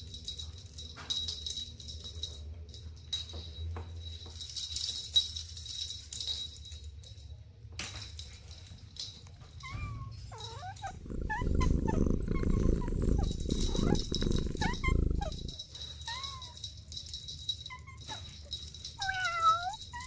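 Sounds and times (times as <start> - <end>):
faint high jingling: 9.6 - 20.0
kittens mewing: 9.8 - 15.6.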